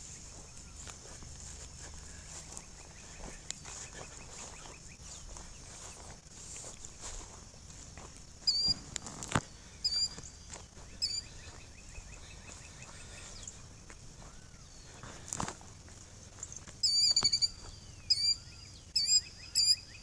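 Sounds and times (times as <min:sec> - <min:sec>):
high insect hiss: 0:00.0 - 0:20.0
bird short sharp calls: 0:08.5 - 0:10.3, 0:16.8 - 0:20.0.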